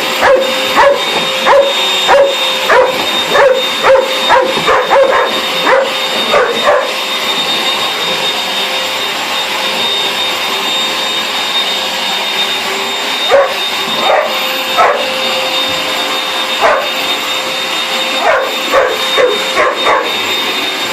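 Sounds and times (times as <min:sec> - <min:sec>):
vacuum cleaner running: 0:00.0 - 0:20.9
dog barking: 0:00.2 - 0:07.0, 0:13.3 - 0:15.2, 0:16.6 - 0:17.0, 0:18.2 - 0:20.2.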